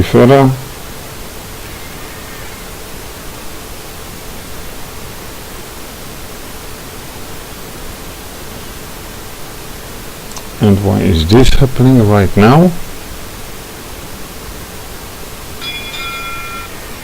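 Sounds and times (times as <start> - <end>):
faint hum-like tone: 0.0 - 17.0
steady background hiss: 0.0 - 17.0.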